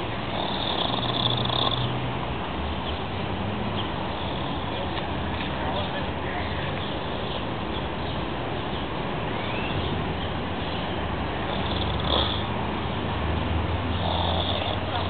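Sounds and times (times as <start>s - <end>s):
low outdoor rumble: 0.0s - 15.0s
rising bird chirp: 9.3s - 10.0s.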